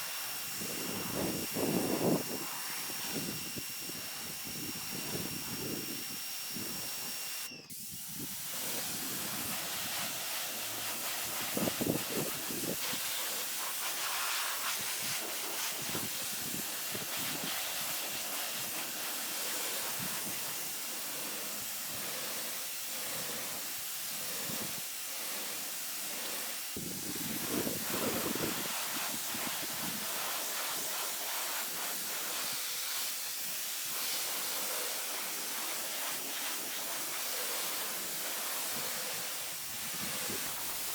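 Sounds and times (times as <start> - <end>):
pressure washer spray hissing: 0.0 - 40.9.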